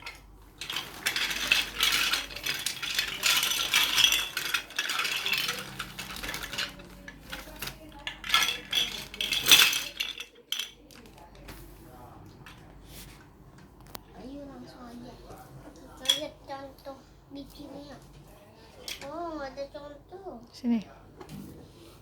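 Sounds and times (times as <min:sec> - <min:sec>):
plastic pieces clattering: 0:00.0 - 0:11.5.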